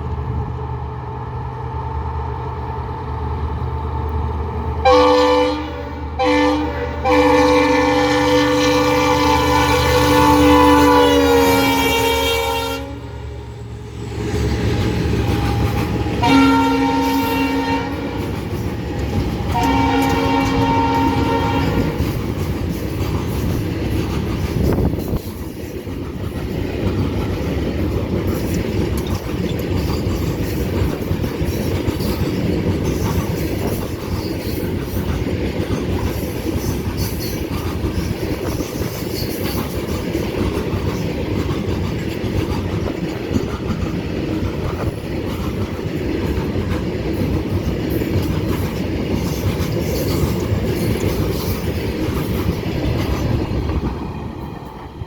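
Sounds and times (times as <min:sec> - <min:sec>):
freight train running past: 0:00.0 - 0:55.0
locomotive horn blasts: 0:04.8 - 0:13.2, 0:15.2 - 0:18.3, 0:19.0 - 0:22.1.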